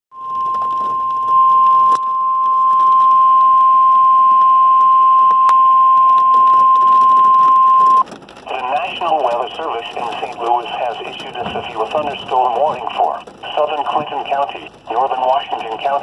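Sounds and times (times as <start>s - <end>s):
high-pitched alarm tone: 0.1s - 8.0s
faint clicks: 4.3s - 16.0s
faint radio static: 6.0s - 16.0s.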